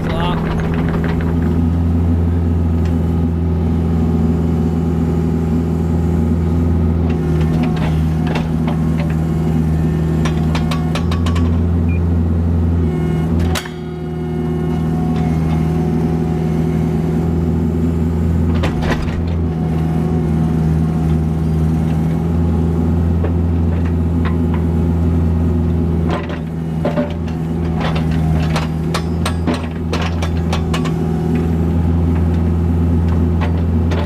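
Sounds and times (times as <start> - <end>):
machine knocks and clunks: 0.0 - 1.9
excavator diesel engine running: 0.0 - 34.0.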